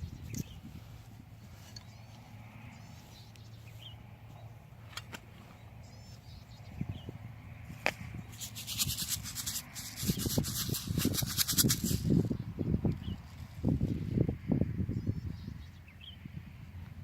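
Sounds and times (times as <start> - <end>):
scratchy rubbing strokes: 7.8 - 12.2.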